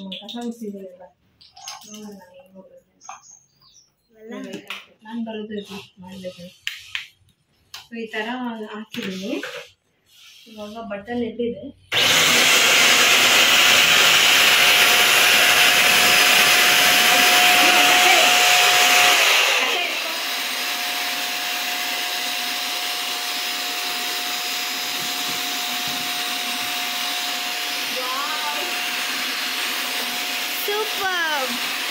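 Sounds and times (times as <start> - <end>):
vacuum cleaner motor whining: 11.9 - 31.9.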